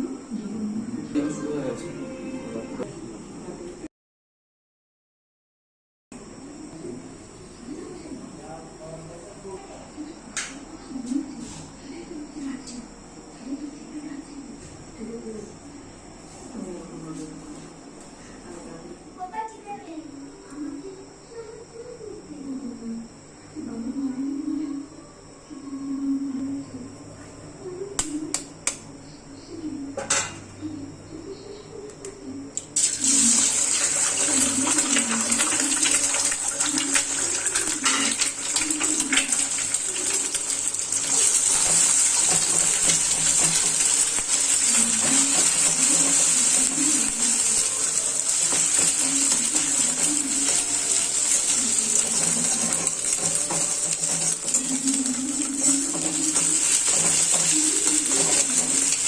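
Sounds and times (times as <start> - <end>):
food sizzling in hot oil: 32.8 - 59.0.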